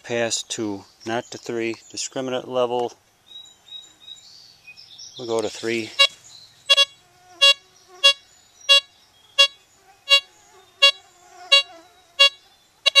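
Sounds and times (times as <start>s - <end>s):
metal detector short beeps: 6.7s - 13.0s.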